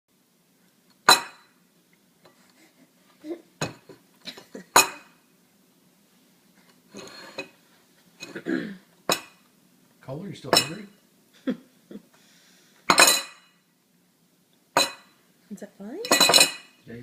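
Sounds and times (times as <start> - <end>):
cutlery clanking on dishes: 1.1 - 1.6, 4.8 - 5.1, 9.1 - 9.4, 10.5 - 10.9, 12.9 - 13.6, 14.8 - 15.2, 16.0 - 16.8.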